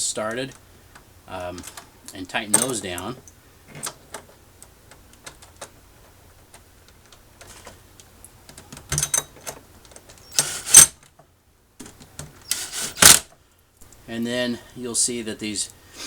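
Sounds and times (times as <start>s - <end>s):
screw-driving noise: 8.6s - 11.0s, 11.8s - 13.3s.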